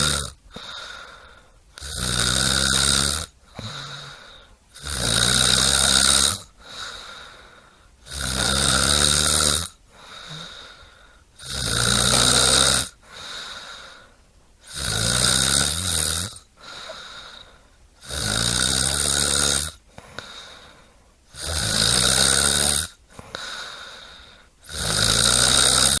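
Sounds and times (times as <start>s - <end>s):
soft breathing: 0.0s - 1.8s, 3.4s - 4.7s, 6.5s - 8.0s, 9.8s - 11.4s, 12.1s - 14.6s, 16.5s - 18.0s, 19.8s - 21.3s, 23.0s - 24.6s
person snoring: 0.0s - 26.0s.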